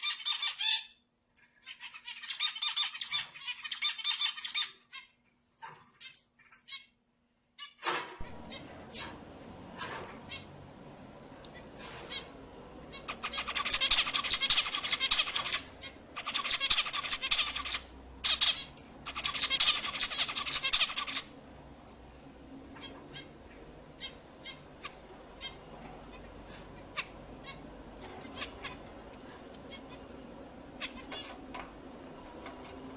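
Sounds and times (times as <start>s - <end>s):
finches chattering calls: 0.0s - 0.8s, 1.6s - 4.8s, 11.6s - 21.3s, 22.7s - 31.6s.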